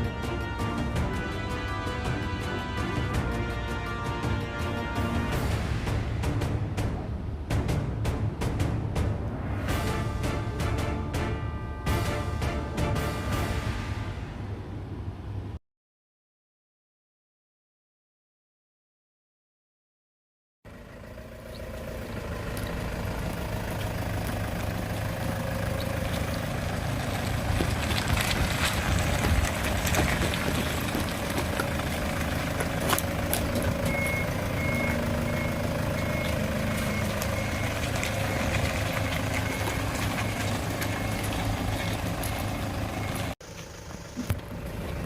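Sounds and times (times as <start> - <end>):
van engine and road noise: 0.0 - 15.6, 20.7 - 45.0.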